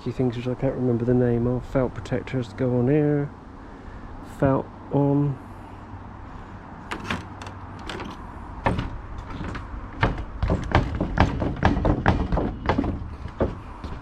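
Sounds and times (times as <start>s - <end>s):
sharp knocks on timber: 8.6s - 14.0s.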